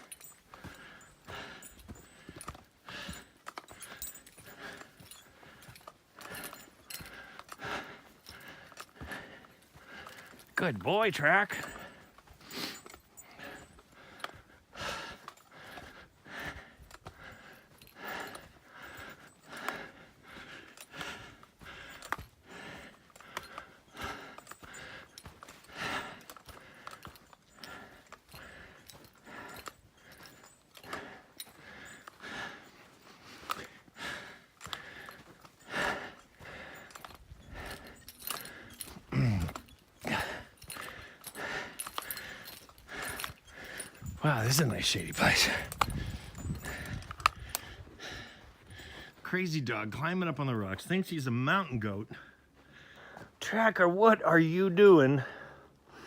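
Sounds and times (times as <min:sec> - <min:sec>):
man breathing hard: 0:00.0 - 0:49.4, 0:52.1 - 0:53.4, 0:55.1 - 0:56.0
light clicks and jingling: 0:00.0 - 0:56.0
low falling grunt: 0:39.1 - 0:39.6.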